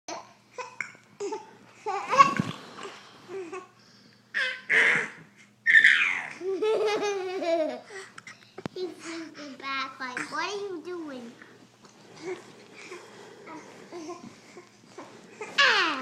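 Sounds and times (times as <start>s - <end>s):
small child laughing and giggling: 0.1s - 2.6s, 4.4s - 8.2s.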